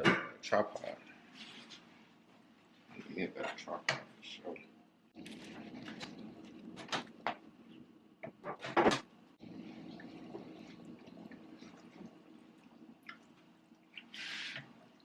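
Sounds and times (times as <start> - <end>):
steady low hum: 4.2 - 15.0.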